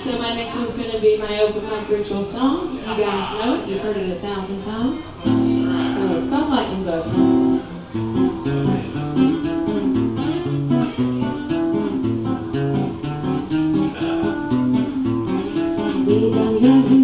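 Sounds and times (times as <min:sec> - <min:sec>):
acoustic guitar fingerpicking: 0:05.2 - 0:17.0.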